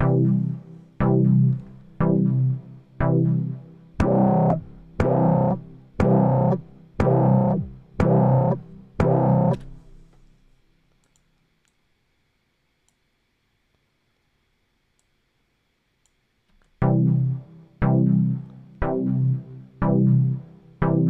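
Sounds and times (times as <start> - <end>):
synthesizer note: 0.0 - 9.8.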